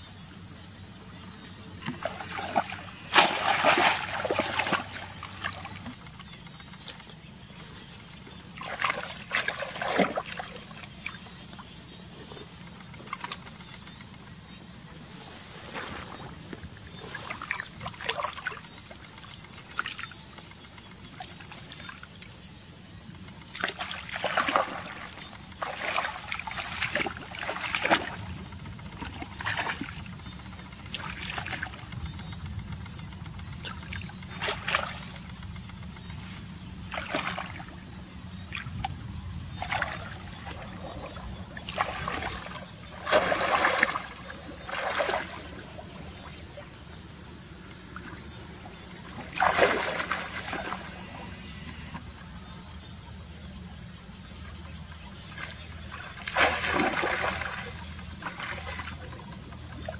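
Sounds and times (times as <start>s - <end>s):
faint low hum: 0.0s - 59.9s
water splashing and trickling: 1.8s - 7.2s, 8.5s - 11.6s, 15.8s - 20.2s, 23.4s - 32.0s, 33.6s - 35.4s, 36.9s - 52.0s, 54.5s - 59.9s.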